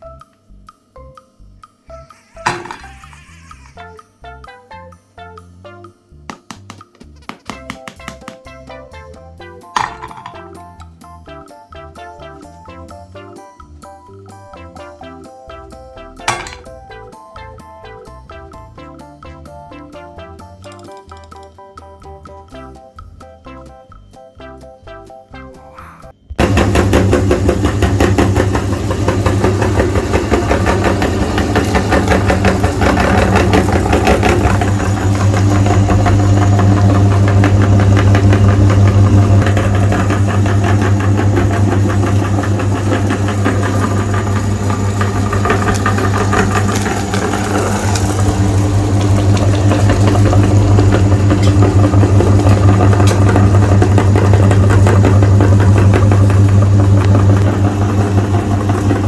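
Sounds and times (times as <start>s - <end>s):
electric meat grinder humming: 1.9s - 3.9s, 26.4s - 59.0s.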